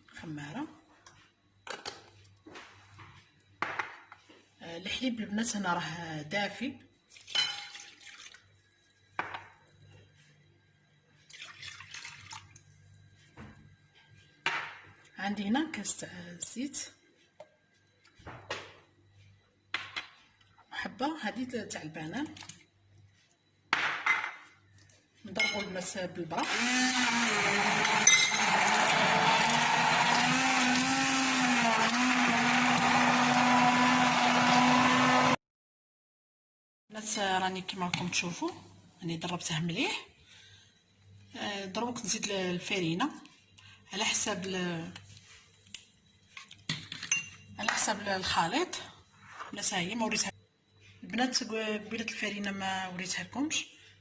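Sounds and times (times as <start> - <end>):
milk pouring into bowl: 7.2 - 8.4, 11.3 - 12.6
stick blender motor hum: 26.4 - 35.4.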